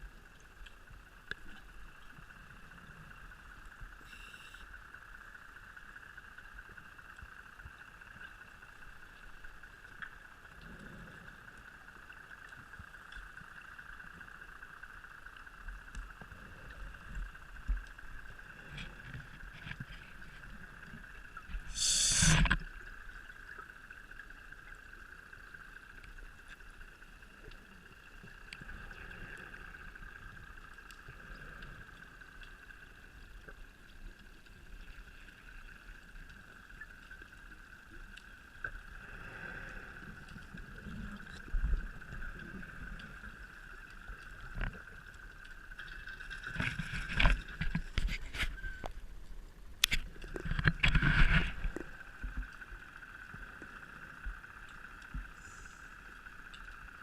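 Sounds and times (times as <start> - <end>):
steady high hum: 0.0 - 57.0
soft bubble gurgles: 15.8 - 57.0.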